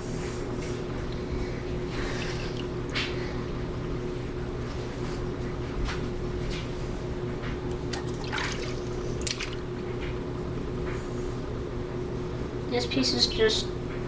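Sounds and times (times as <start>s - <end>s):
tap water running: 2.0s - 3.2s, 7.5s - 10.2s
water splashes: 7.8s - 9.7s.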